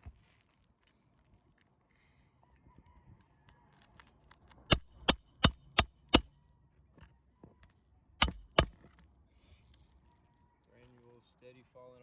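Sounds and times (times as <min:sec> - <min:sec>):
hammer blows on nail: 0:04.7 - 0:05.9, 0:08.2 - 0:08.7.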